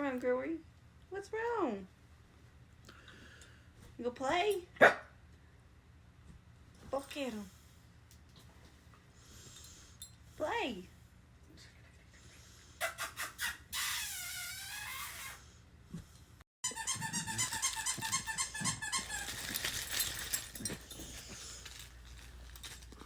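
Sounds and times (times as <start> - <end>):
puppies squeaking: 16.6 - 20.8.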